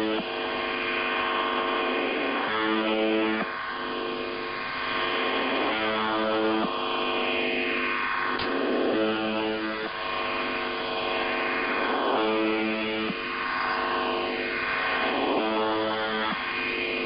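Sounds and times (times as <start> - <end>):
harsh radio buzz tone: 0.0 - 17.0
radio hum and static: 0.0 - 17.0.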